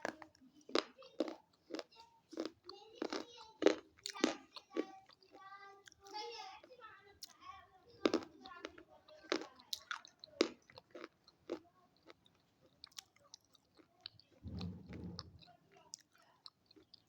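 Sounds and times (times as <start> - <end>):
crunching and chewing food: 0.0 - 17.0
brief low rumble: 14.4 - 15.4.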